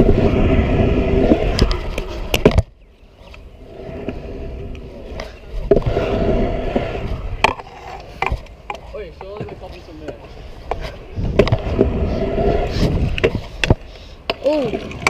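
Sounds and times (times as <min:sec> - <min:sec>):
scooter wheels rolling on pavement: 0:00.0 - 0:15.0
scooter deck clacking on ground: 0:07.4 - 0:11.8.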